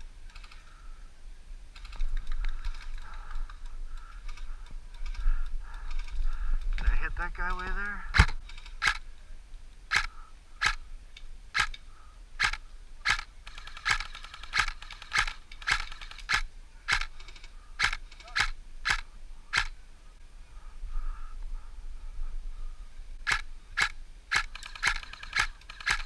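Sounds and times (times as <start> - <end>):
airsoft rifle shots: 8.1 - 9.0, 9.9 - 10.8, 11.5 - 11.8, 12.4 - 19.7, 23.2 - 26.0.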